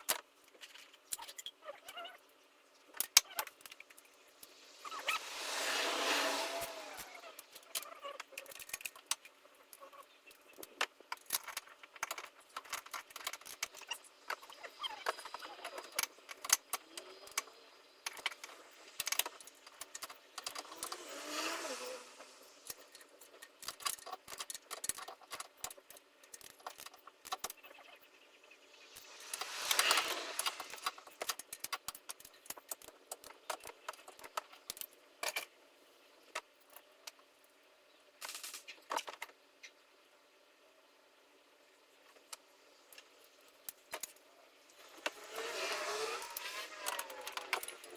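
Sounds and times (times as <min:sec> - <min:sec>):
scratchy scraping: 0:04.5 - 0:08.1, 0:28.9 - 0:31.5, 0:45.0 - 0:47.9.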